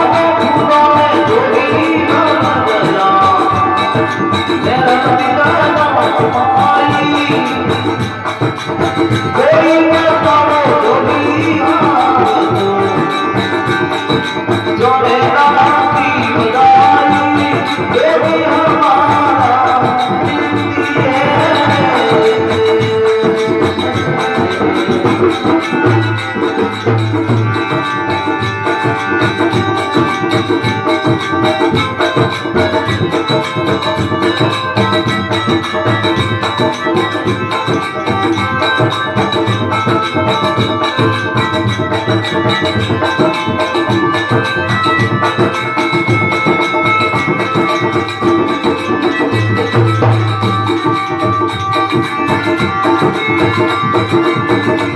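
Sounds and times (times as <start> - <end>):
fast hand-drum strokes: 0.0 - 54.9
held melody notes: 0.0 - 54.9
jingling rattle percussion: 0.0 - 54.9
person singing: 0.0 - 54.9.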